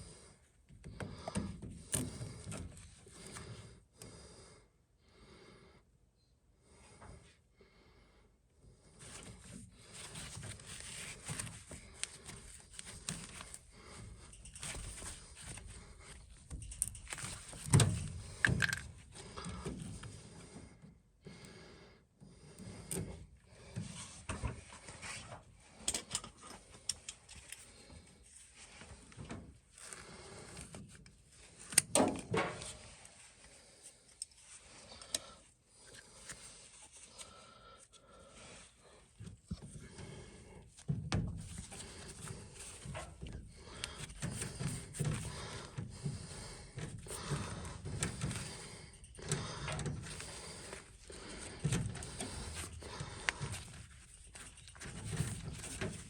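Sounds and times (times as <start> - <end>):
handling clicks scrapes and knocks: 9.1 - 20.2, 22.8 - 37.3, 40.7 - 56.0.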